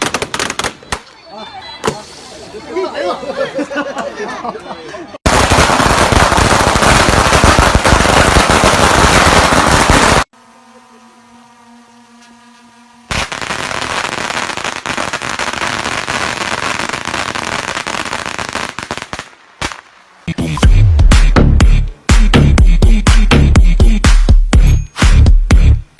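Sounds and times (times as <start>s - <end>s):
firecrackers crackling: 0.0s - 1.1s, 5.2s - 10.3s, 13.1s - 20.3s.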